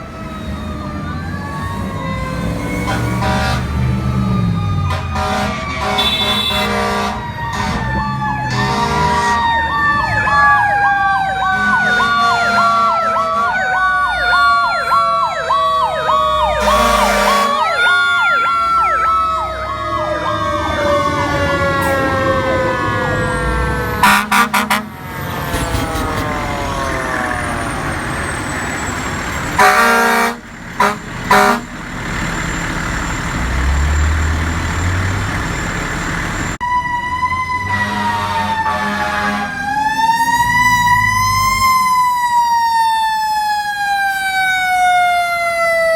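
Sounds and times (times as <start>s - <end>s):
siren tone sliding down: 0.0s - 29.2s
warbling siren: 0.0s - 45.9s
air horn blasts: 2.8s - 3.8s, 4.8s - 9.6s, 11.4s - 13.8s, 16.6s - 17.7s, 24.0s - 25.0s, 29.6s - 31.8s, 37.7s - 39.6s.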